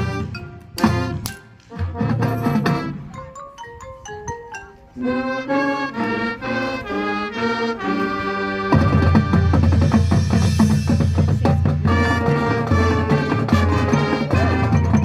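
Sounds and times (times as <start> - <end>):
marimba and xylophone notes: 0.0 - 5.9, 10.1 - 15.0
marching band playing: 0.0 - 15.0.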